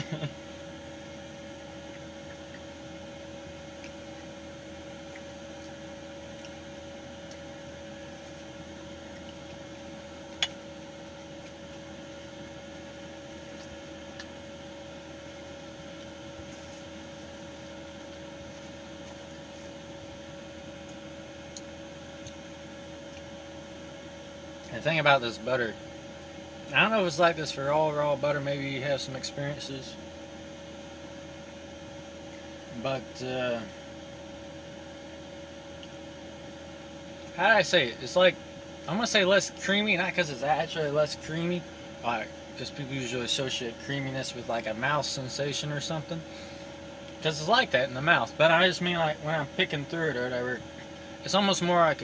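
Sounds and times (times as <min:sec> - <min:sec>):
steady two-tone room hum: 0:00.0 - 0:52.0.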